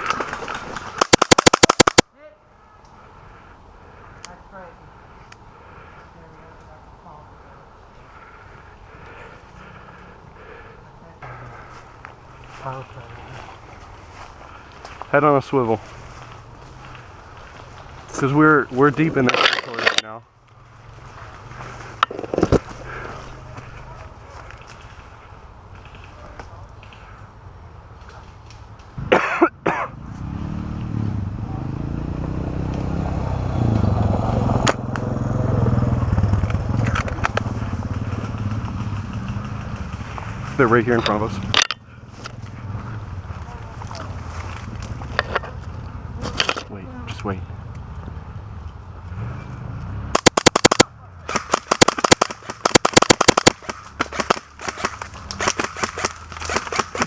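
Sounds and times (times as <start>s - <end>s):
airsoft gun shots: 1.0s - 2.0s, 50.2s - 57.0s.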